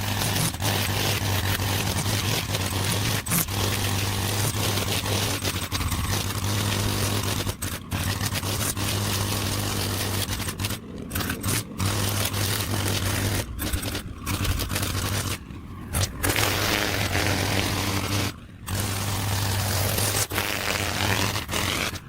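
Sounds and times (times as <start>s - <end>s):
cutting hiss: 0.0s - 22.0s
small petrol engine running: 0.0s - 22.0s.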